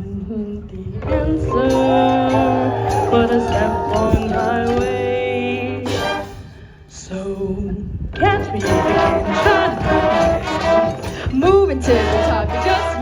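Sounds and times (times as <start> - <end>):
person singing: 0.0 - 6.3, 7.0 - 13.0
marching band brass: 5.8 - 6.6, 8.7 - 13.0.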